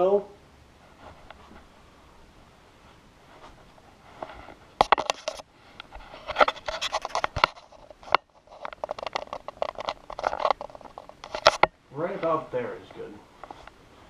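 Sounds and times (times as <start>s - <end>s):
camera rig and vest scraping and clicking: 3.3s - 12.4s.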